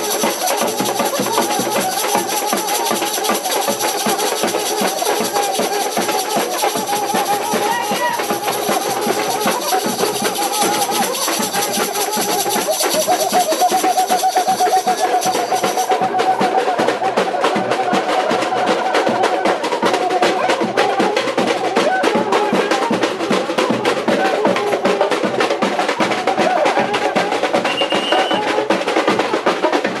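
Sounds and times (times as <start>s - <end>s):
samba drums and percussion: 0.0s - 30.0s
high whistle-like tone: 27.7s - 28.4s.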